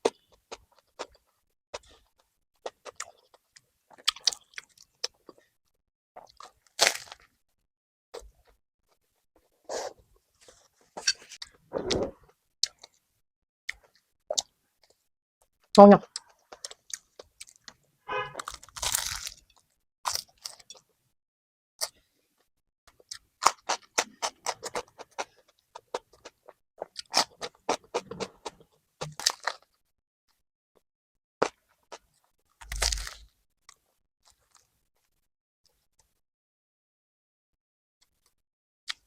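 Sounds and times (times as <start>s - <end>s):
crunchy bread chewing: 6.2s - 7.4s, 16.1s - 17.8s, 18.4s - 20.9s, 22.9s - 29.8s, 31.4s - 35.2s.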